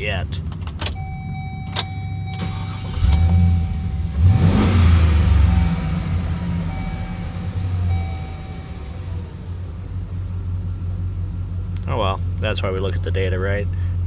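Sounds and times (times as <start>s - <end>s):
van engine idling and revving: 0.0s - 14.0s.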